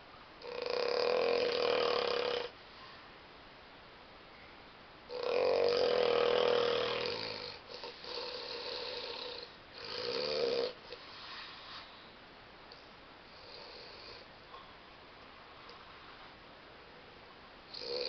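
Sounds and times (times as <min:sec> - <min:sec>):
person snoring: 0:00.4 - 0:02.5, 0:05.1 - 0:11.6, 0:17.7 - 0:18.0
quiet breath: 0:10.8 - 0:12.2.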